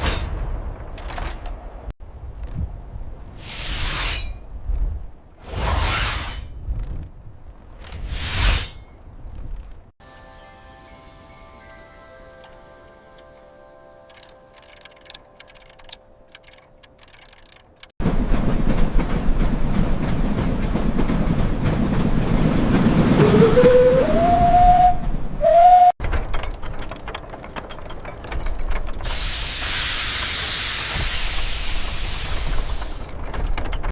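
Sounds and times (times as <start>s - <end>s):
faint chimes: 10.0s - 15.5s
rumble of steam: 18.0s - 26.4s, 28.8s - 33.4s
whistle rising in pitch: 23.2s - 26.0s
clattering machinery: 26.0s - 33.9s
steam venting hiss: 29.0s - 33.1s.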